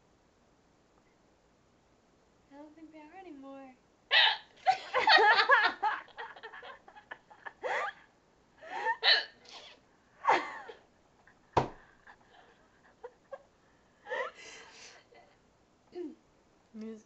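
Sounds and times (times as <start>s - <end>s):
woman hiccupping: 4.1s - 4.6s, 8.8s - 9.8s.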